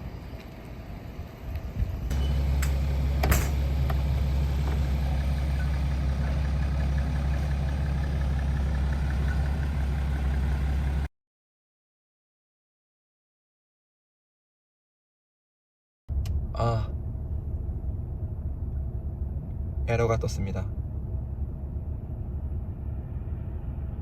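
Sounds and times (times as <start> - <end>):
car engine idling: 0.0 - 11.1, 16.1 - 24.0.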